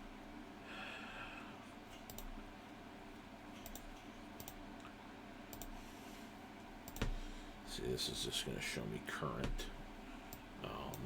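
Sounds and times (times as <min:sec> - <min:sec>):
low steady hum: 0:00.0 - 0:11.0
computer clicks: 0:02.0 - 0:02.4, 0:03.6 - 0:04.6, 0:05.5 - 0:05.8, 0:06.8 - 0:07.2, 0:10.3 - 0:11.0.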